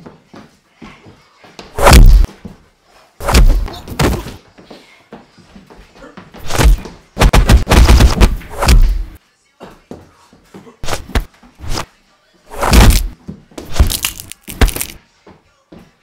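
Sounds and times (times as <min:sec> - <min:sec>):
punch sound effects: 0:01.8 - 0:02.3, 0:03.2 - 0:04.2, 0:06.4 - 0:09.2, 0:10.8 - 0:11.8, 0:12.5 - 0:15.0.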